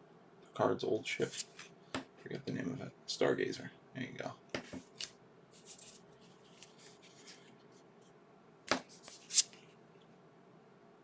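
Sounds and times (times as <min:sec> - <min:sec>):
cards rustling and sliding: 0:04.6 - 0:07.5, 0:08.7 - 0:09.6.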